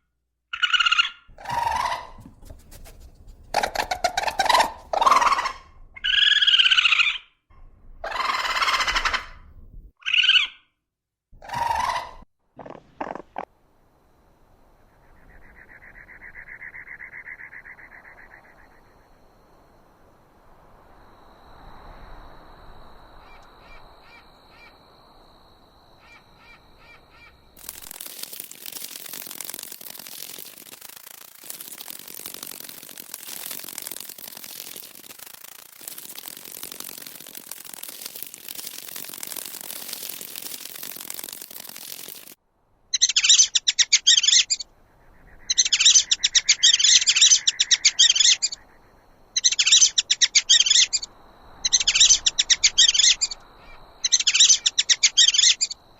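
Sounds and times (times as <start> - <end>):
bird chirps: 26.0 - 55.8
rapid high-pitched bird trilling: 26.8 - 42.4, 43.0 - 44.6, 45.4 - 48.6, 49.4 - 53.4, 54.0 - 55.8
steady hiss: 27.4 - 42.4.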